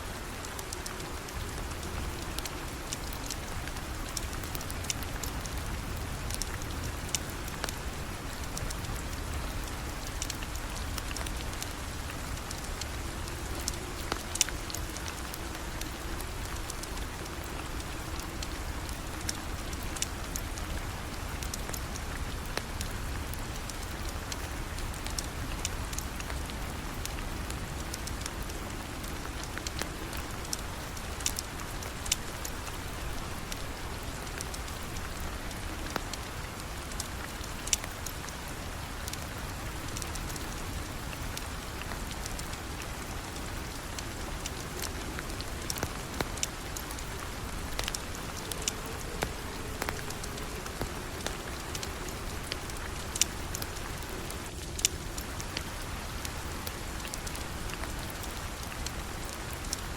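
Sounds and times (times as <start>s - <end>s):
steady rain falling: 0.0s - 59.9s
sharp pops and ticks: 47.7s - 53.8s.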